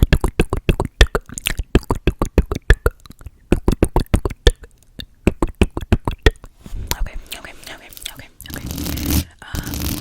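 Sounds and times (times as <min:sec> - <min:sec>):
wet mouth clicks and pops: 0:00.0 - 0:06.5.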